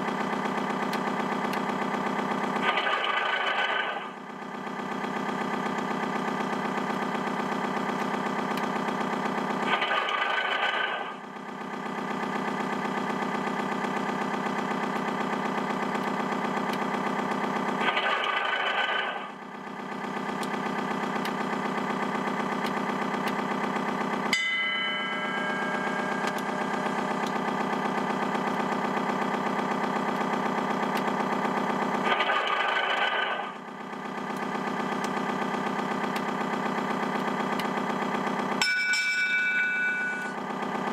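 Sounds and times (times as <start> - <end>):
simulated diesel engine running: 0.0 - 40.9.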